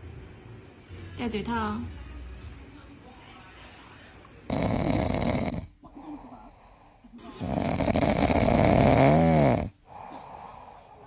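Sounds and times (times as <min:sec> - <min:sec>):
dog snoring: 0:04.5 - 0:05.8, 0:07.3 - 0:10.8.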